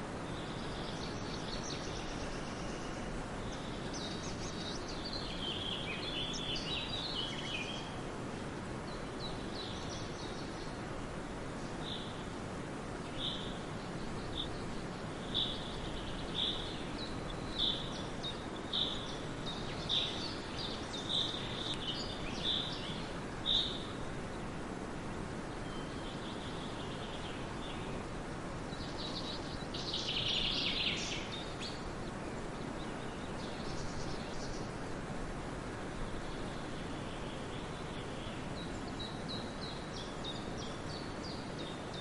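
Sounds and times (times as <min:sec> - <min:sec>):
steady background hiss: 0:00.0 - 0:42.0
birds chirping: 0:13.0 - 0:24.6, 0:28.6 - 0:34.8.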